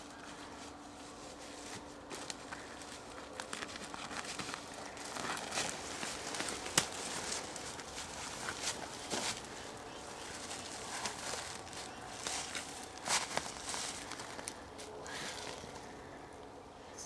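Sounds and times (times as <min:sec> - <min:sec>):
footsteps crunching on dry ground: 0:00.0 - 0:15.9
twig snapping: 0:05.0 - 0:07.8.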